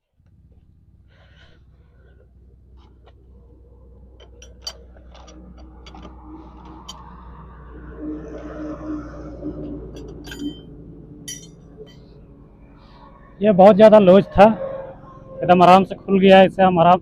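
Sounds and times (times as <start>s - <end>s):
low steady hum: 0.0s - 13.6s.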